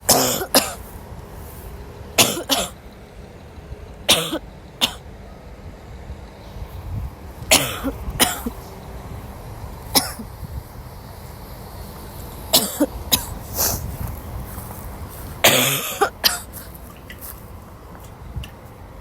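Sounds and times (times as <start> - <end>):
woman coughing: 0.1 - 0.8, 2.2 - 2.8, 4.1 - 5.0, 7.5 - 8.6, 9.9 - 10.3, 12.5 - 13.4, 15.4 - 16.5.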